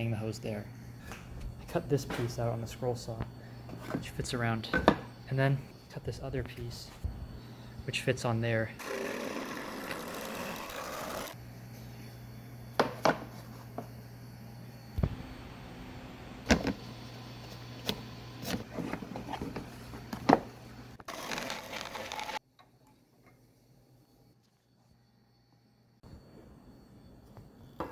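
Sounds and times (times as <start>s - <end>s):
steady low hum: 0.0s - 8.8s, 11.3s - 21.0s.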